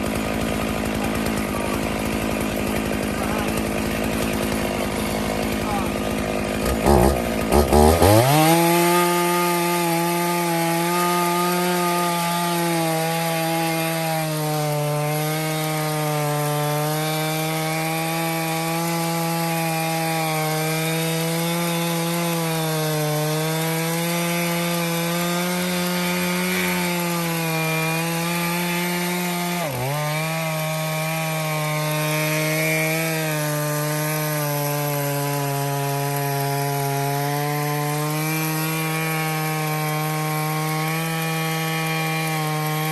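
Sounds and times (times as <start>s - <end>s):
chainsaw cutting through log: 0.0s - 42.9s.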